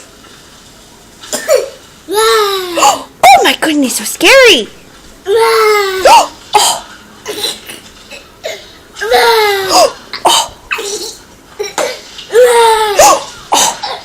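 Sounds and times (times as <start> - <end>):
toddler laughing: 9.0 - 13.7
toddler making scary vocal noises: 12.3 - 13.9.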